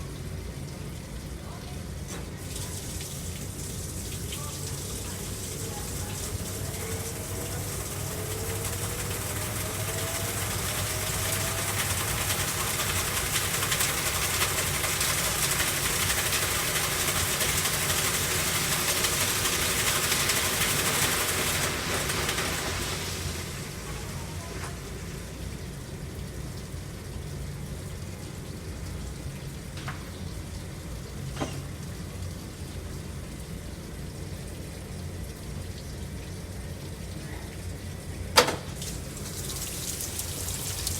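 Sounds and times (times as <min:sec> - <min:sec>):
low machine hum: 0:00.0 - 0:40.9
water rushing into drum: 0:02.2 - 0:25.6, 0:37.8 - 0:40.9.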